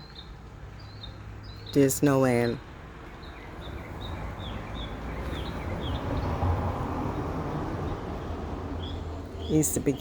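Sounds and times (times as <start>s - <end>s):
birds chirping: 0.0s - 10.0s
low rumbling outdoor noise: 0.0s - 10.0s.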